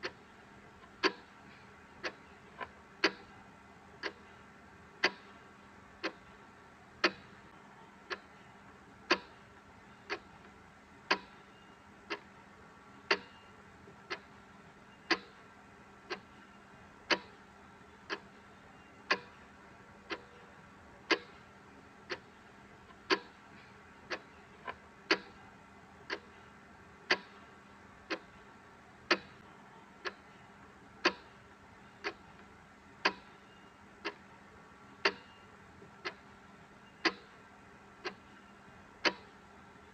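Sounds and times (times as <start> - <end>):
faint ambient noise: 0.0 - 39.9
clock ticking: 2.0 - 3.3, 4.0 - 4.2, 5.0 - 5.4, 7.0 - 7.4, 9.1 - 9.4, 10.1 - 10.3, 11.1 - 12.2, 13.1 - 13.4, 15.0 - 15.4, 16.1 - 16.3, 17.1 - 17.4, 18.1 - 18.4, 21.1 - 21.4, 23.0 - 25.4, 26.1 - 26.5, 27.1 - 27.5, 28.1 - 28.5, 29.1 - 29.4, 31.0 - 34.3, 35.0 - 35.4, 36.9 - 37.4, 39.0 - 39.4.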